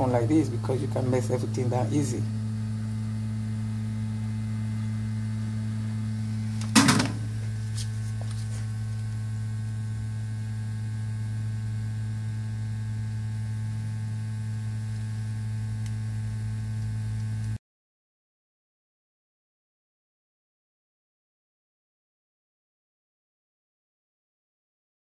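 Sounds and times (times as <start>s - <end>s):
low electrical hum: 0.0s - 17.6s.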